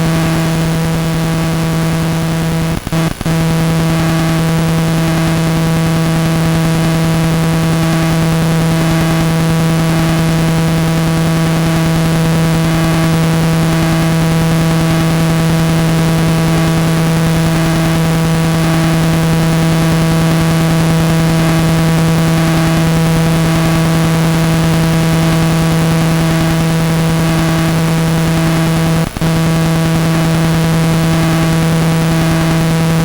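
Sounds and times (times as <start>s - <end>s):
electrical buzz: 0.0s - 33.0s
static hiss: 0.0s - 33.0s.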